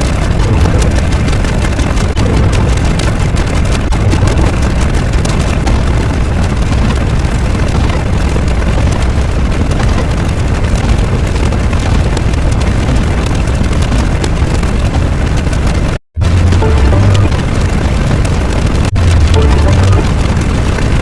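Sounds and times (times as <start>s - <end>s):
low rumbling roar: 0.0s - 8.2s, 16.2s - 21.0s.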